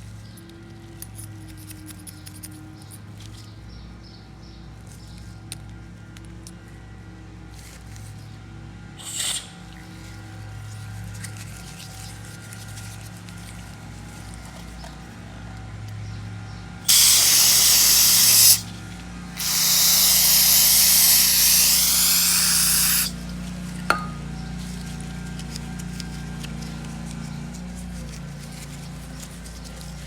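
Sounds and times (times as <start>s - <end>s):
hissing spray blasts: 16.9s - 18.8s, 19.4s - 23.2s.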